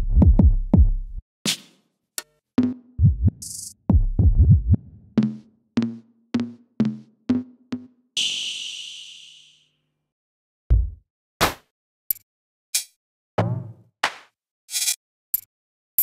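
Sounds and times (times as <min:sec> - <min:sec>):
deep kick drums: 0:00.0 - 0:01.2, 0:03.0 - 0:04.8, 0:10.7 - 0:11.0.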